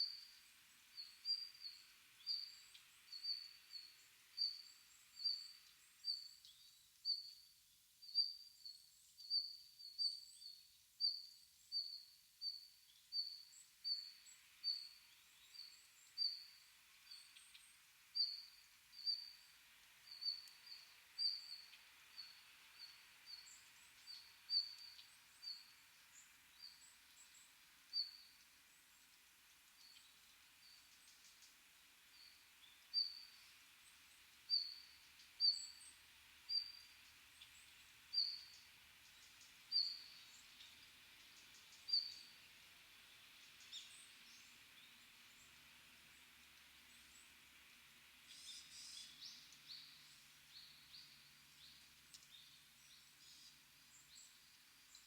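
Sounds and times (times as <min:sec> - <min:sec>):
forest ambience hiss: 0:00.0 - 0:55.0
small bird calling: 0:48.3 - 0:50.0.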